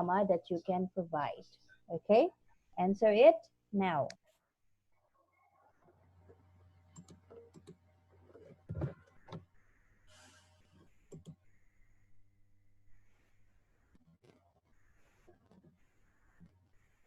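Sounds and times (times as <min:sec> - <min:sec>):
faint clicks and taps: 0:10.8 - 0:11.4.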